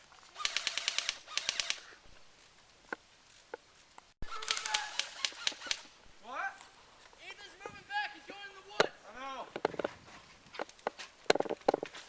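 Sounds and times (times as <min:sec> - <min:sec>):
airsoft gun firing bursts: 0:00.4 - 0:01.8, 0:04.3 - 0:05.8.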